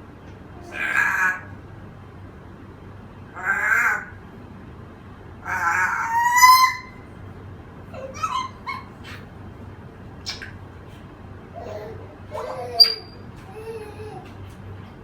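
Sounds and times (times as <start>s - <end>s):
parrot calling: 0.4s - 1.7s, 3.3s - 4.2s, 5.4s - 7.2s, 7.8s - 9.4s, 11.6s - 14.3s
parrot chirps and clicks: 10.2s - 10.6s, 12.8s - 13.2s.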